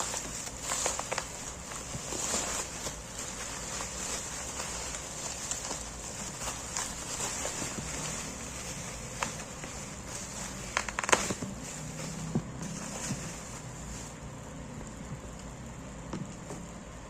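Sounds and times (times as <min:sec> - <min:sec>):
steady hiss: 0:00.0 - 0:17.0.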